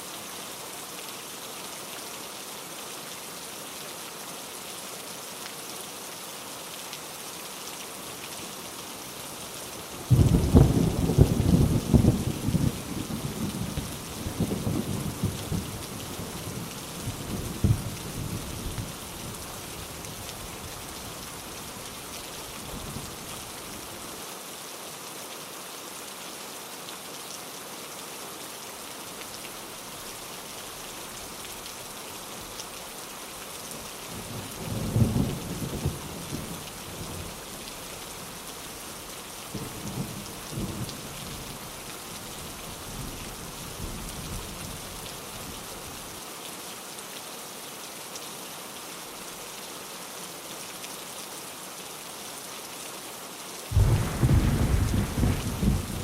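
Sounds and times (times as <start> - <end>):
heavy rain: 0.0 - 56.0
rolling thunder: 53.7 - 56.0.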